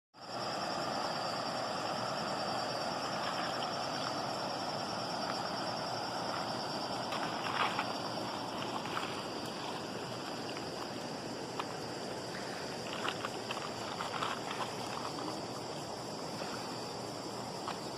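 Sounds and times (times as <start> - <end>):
river water rushing: 0.2 - 17.9.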